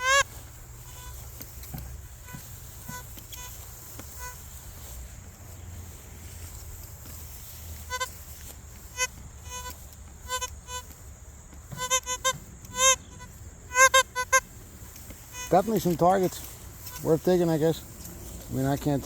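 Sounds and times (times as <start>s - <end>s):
metal detector beeps: 0.0s - 4.6s, 7.7s - 11.0s, 11.7s - 14.5s, 15.3s - 17.8s.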